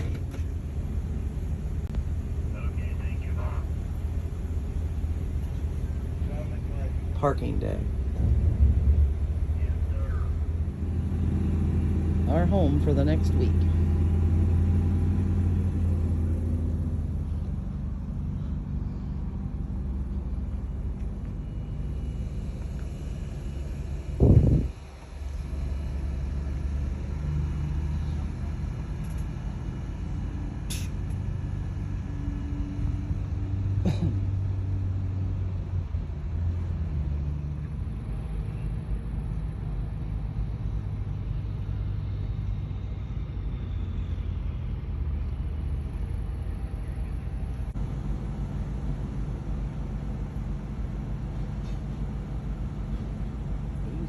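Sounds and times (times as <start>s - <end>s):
vehicle engine low rumble: 0.0s - 54.0s
sharp click: 30.7s - 31.2s.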